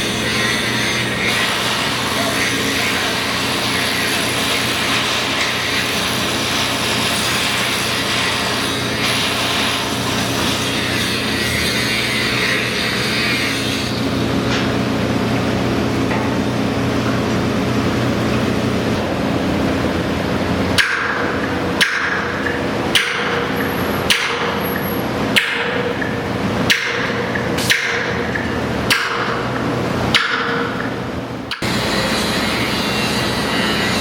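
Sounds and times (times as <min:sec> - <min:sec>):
low machine hum: 0:00.0 - 0:34.0
ringing hammer blows: 0:20.8 - 0:34.0.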